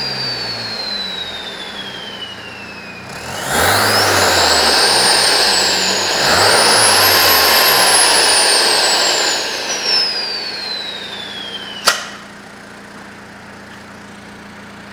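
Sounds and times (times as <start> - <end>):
turbo whistle whine: 0.0 - 12.2
car engine revving: 2.9 - 11.9
sharp crack: 11.8 - 12.2.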